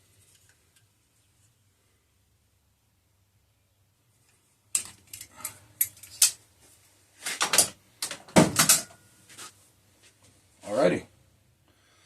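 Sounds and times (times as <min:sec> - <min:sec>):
metal parts clicking and clinking: 0:04.7 - 0:06.4.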